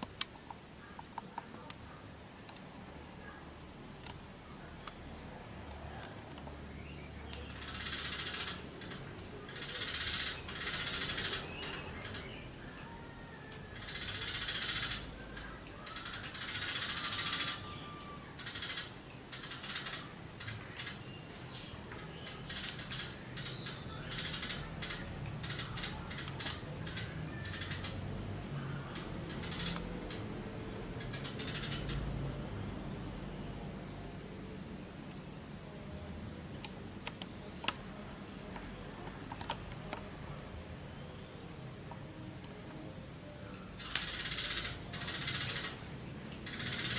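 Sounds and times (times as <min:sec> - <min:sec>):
sparrow chattering calls: 0:07.2 - 0:12.6, 0:13.7 - 0:28.0, 0:28.8 - 0:30.3, 0:31.0 - 0:32.1, 0:43.8 - 0:46.9.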